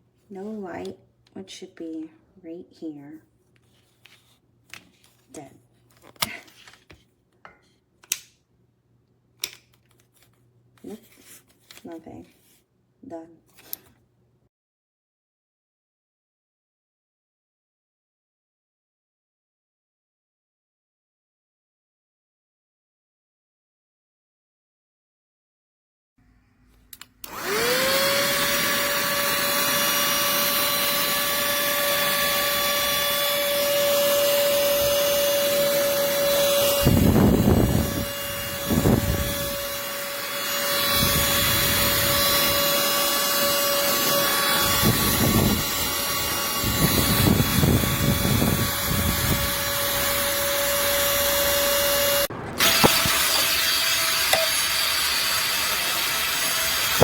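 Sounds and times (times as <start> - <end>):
handheld vacuum cleaner whine: 27.2 - 57.0.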